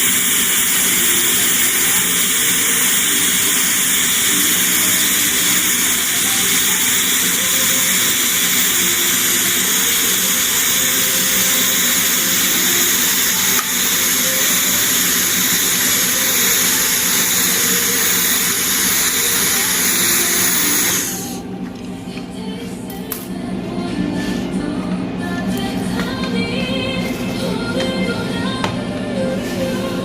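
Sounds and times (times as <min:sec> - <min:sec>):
welding arc hissing: 0:00.0 - 0:21.4.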